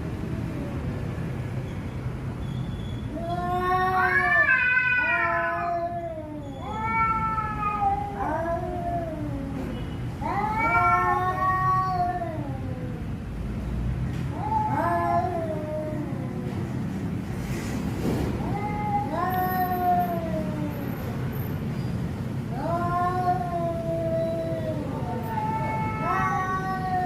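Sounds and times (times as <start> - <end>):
cats yowling meows: 3.0 - 13.2, 14.3 - 16.8, 18.4 - 21.2, 22.5 - 27.0.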